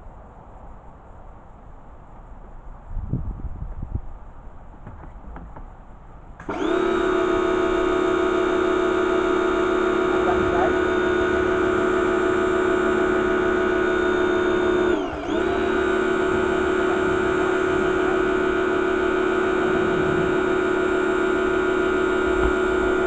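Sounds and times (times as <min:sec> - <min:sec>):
pressure washer motor whine: 0:06.4 - 0:23.0.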